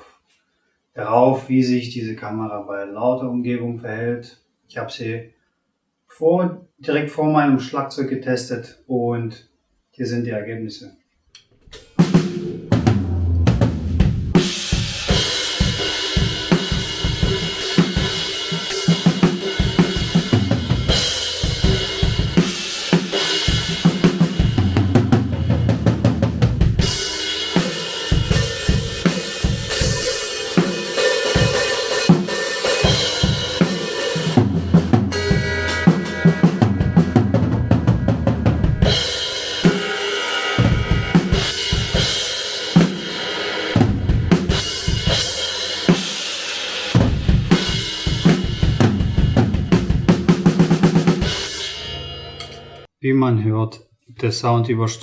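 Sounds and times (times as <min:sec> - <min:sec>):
drum kit playing: 0:11.7 - 0:52.9.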